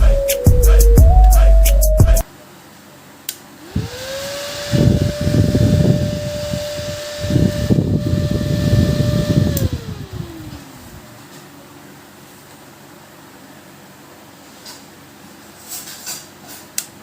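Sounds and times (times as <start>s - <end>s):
cooling fan whine and hum: 0.0s - 17.0s
airflow buffeting microphone: 3.8s - 11.2s.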